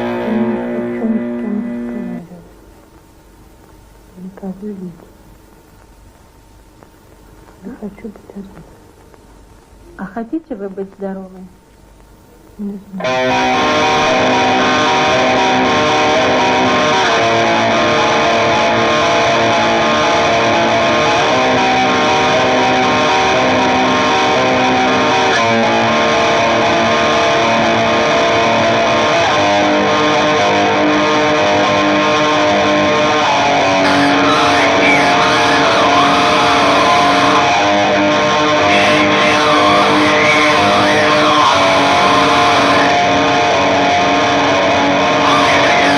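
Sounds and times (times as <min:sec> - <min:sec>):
wavering guitar melody: 0:00.0 - 0:02.6, 0:12.9 - 0:45.9
distorted electric guitar chords: 0:00.0 - 0:10.1, 0:11.6 - 0:45.9.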